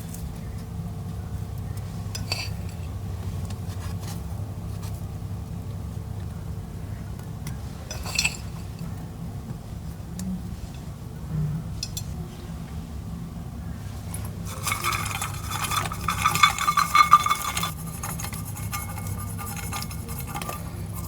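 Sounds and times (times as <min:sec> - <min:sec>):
low steady hum: 0:00.0 - 0:21.0
utensils clinking against dishes: 0:02.1 - 0:02.8, 0:07.9 - 0:09.0, 0:14.1 - 0:21.0.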